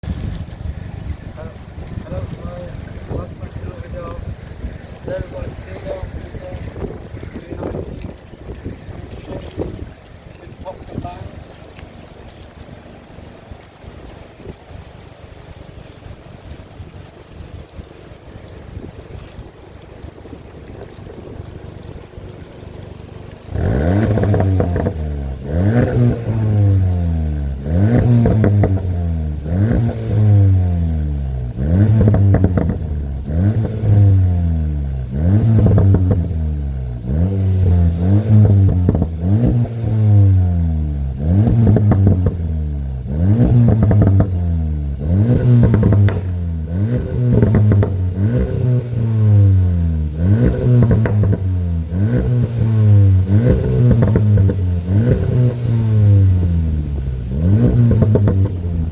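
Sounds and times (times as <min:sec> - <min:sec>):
exhaust pops and crackles: 0:00.0 - 0:58.9
car engine revving hard: 0:23.5 - 0:58.9.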